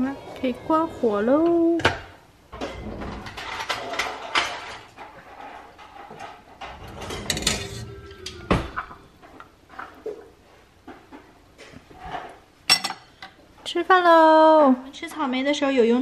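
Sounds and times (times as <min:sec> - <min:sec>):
dishes and pot clinking: 0:01.3 - 0:10.3, 0:12.0 - 0:13.4.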